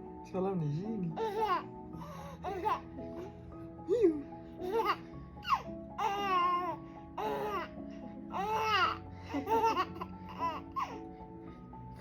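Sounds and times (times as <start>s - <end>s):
music playing: 0.0s - 12.0s
baby babbling and laughing: 1.2s - 2.9s, 3.9s - 7.7s, 8.3s - 11.0s.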